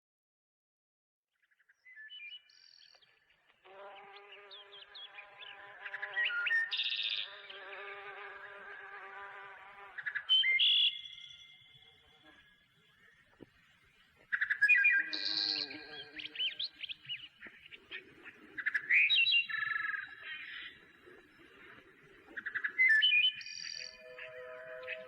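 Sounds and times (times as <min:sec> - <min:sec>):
bird chirps: 0:01.4 - 0:25.0
flying insect buzzing: 0:07.1 - 0:10.0, 0:15.1 - 0:16.6
whistled bird notes: 0:10.1 - 0:12.4, 0:22.3 - 0:25.0.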